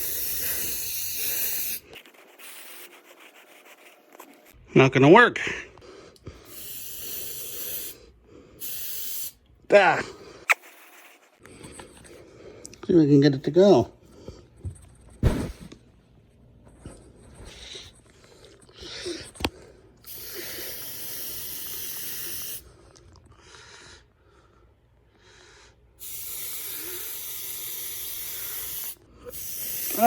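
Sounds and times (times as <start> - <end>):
aerosol spray hissing: 0.0 - 2.9, 6.5 - 8.0, 8.6 - 9.4, 20.1 - 22.6, 26.0 - 30.0.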